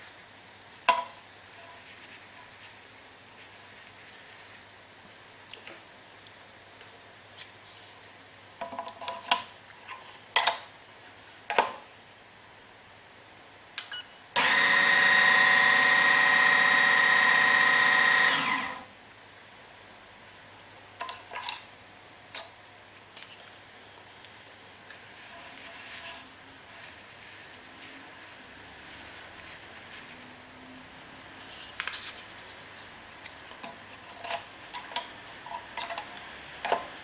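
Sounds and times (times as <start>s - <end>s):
coffee grinder motor whining: 14.4s - 18.9s.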